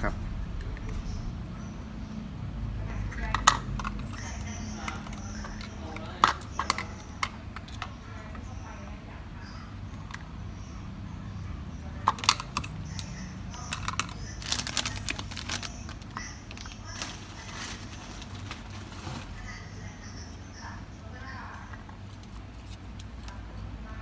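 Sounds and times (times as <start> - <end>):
steady low hum: 0.0 - 24.0
small hard parts clicking: 3.2 - 8.5, 12.0 - 19.0.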